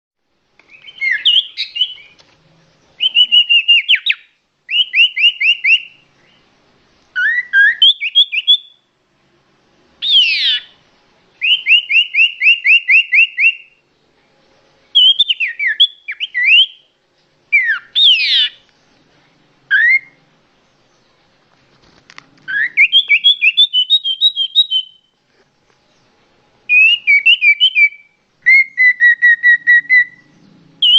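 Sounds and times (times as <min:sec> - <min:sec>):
songbird whistling song: 0:00.6 - 0:06.5, 0:07.1 - 0:08.9, 0:10.0 - 0:10.8, 0:11.4 - 0:21.2, 0:22.4 - 0:25.2, 0:25.8 - 0:30.9.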